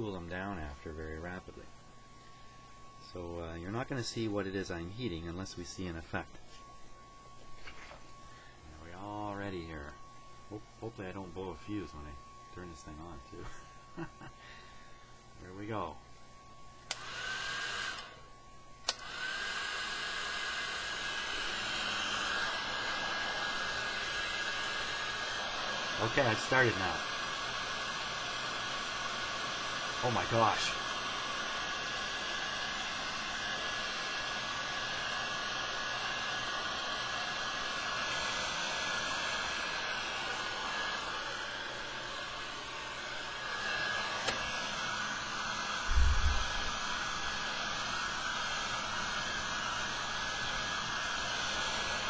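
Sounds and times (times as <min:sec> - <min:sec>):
heat gun motor whine: 0:12.8 - 0:15.9, 0:16.6 - 0:52.0
heat gun switch click: 0:18.8 - 0:19.1
rush of air: 0:45.8 - 0:46.8.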